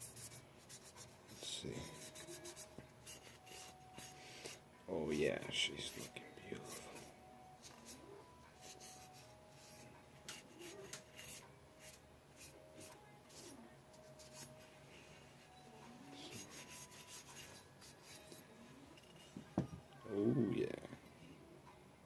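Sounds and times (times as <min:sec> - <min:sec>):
metal parts rubbing and clicking: 0:19.0 - 0:19.4.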